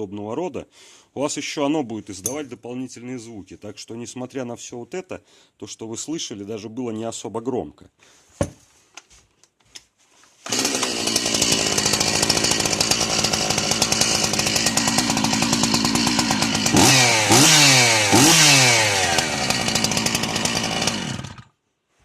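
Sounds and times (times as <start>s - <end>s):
chainsaw engine idling and revving: 10.4s - 21.5s.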